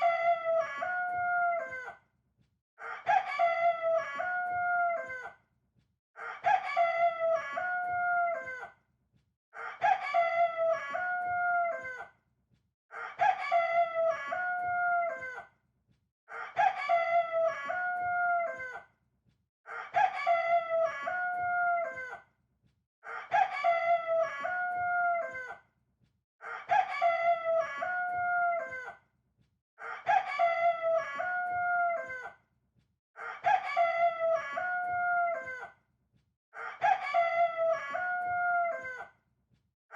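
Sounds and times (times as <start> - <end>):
rooster crowing: 0.0 - 2.0, 2.8 - 5.3, 6.2 - 8.7, 9.6 - 12.0, 13.0 - 15.4, 16.3 - 18.8, 19.7 - 22.2, 23.1 - 25.6, 26.4 - 29.0, 29.8 - 32.3, 33.2 - 35.7, 36.6 - 39.1.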